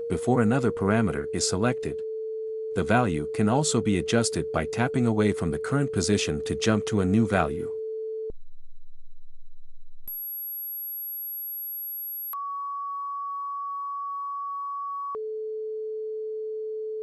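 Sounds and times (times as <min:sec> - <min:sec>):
sine-wave tone changing pitch: 0:00.0 - 0:06.5, 0:07.7 - 0:17.0.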